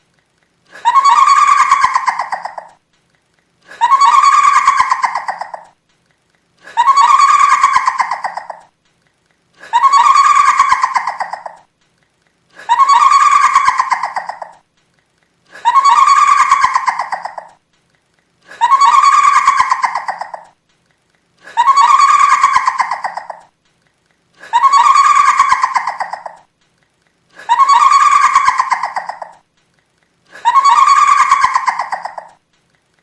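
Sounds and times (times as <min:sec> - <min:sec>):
woman cackling laugh: 0:00.7 - 0:02.8, 0:03.6 - 0:05.8, 0:06.6 - 0:08.7, 0:09.6 - 0:11.7, 0:12.5 - 0:14.6, 0:15.5 - 0:17.6, 0:18.4 - 0:20.6, 0:21.4 - 0:23.5, 0:24.4 - 0:26.5, 0:27.3 - 0:29.4, 0:30.3 - 0:32.4.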